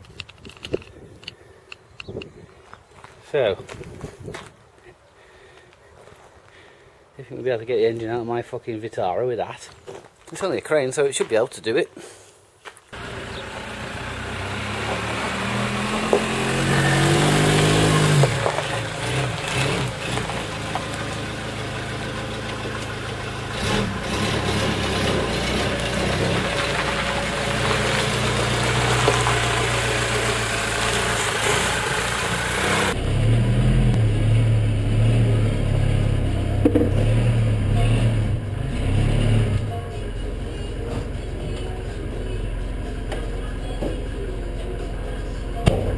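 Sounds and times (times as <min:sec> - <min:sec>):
truck engine running and revving: 0:13.0 - 0:45.9.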